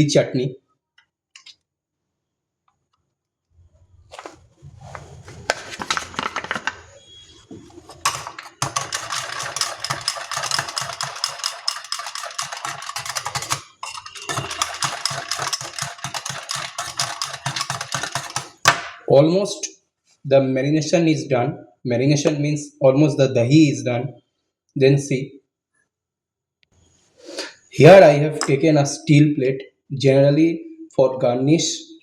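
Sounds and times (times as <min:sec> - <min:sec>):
spoon scraping bowl: 0:04.8 - 0:18.7.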